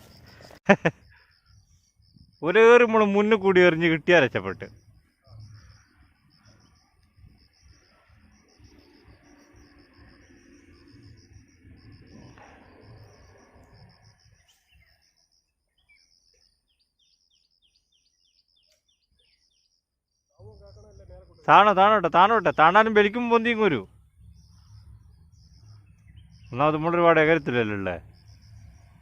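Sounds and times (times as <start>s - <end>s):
insect chirping trill: 0.0s - 29.0s
low rumbling noise: 23.7s - 29.0s.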